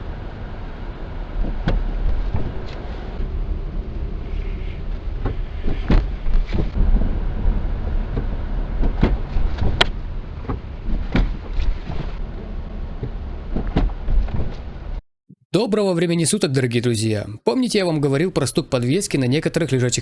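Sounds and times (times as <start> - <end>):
road rumble inside car: 0.0 - 15.0
suspension knocks: 1.3 - 3.3, 4.9 - 15.0.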